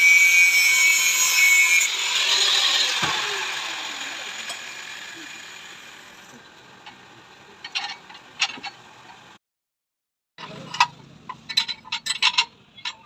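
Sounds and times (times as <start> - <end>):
metal parts clinking and knocking: 7.6 - 9.2, 10.4 - 13.0.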